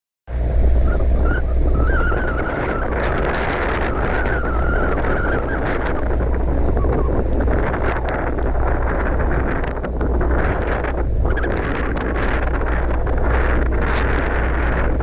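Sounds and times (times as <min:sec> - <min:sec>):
boat engine humming: 0:00.3 - 0:15.0
wind buffeting microphone: 0:00.3 - 0:15.0
wavering high whistle: 0:00.8 - 0:07.2.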